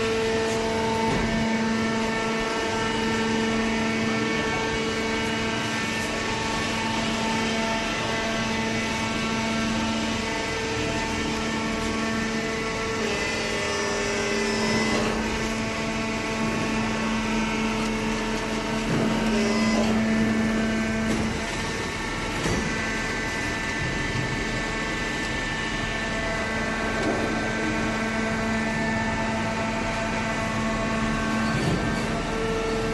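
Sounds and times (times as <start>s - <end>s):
hydraulic baler motor humming: 0.0s - 32.9s.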